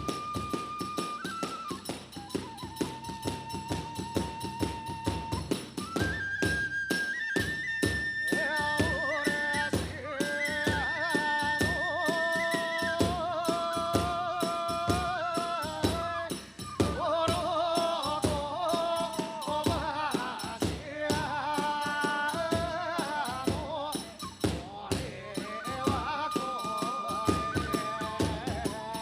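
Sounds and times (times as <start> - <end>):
bamboo flute melody: 0.0 - 29.0
small hand cymbals: 0.0 - 29.0
fast drum beat: 7.6 - 29.0.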